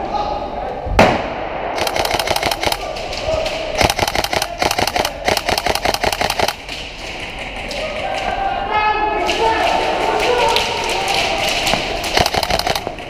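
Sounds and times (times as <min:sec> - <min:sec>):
airsoft rifle firing full-auto: 0:01.8 - 0:02.9, 0:03.8 - 0:06.6, 0:12.1 - 0:12.9.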